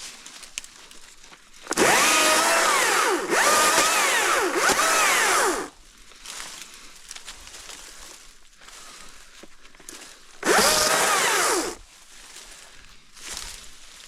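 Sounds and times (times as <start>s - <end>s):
electric chainsaw motor whine: 1.7s - 5.8s, 10.4s - 11.8s.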